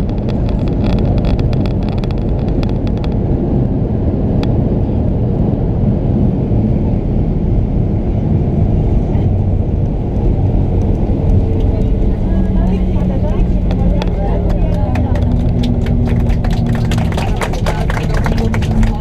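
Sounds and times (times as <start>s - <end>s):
small rattling clicks: 0.0s - 3.2s
airplane engines and airflow in cabin: 0.0s - 19.0s.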